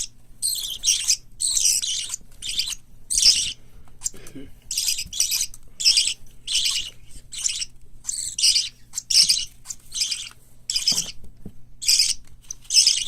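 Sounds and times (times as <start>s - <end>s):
parakeet chicks calling: 0.0s - 11.2s, 11.8s - 13.0s.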